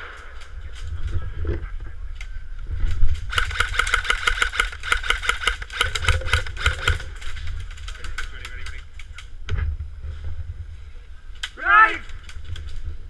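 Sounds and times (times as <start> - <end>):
rumbling handling noise: 0.0 - 13.0
airsoft rifle full-auto burst: 3.3 - 7.1.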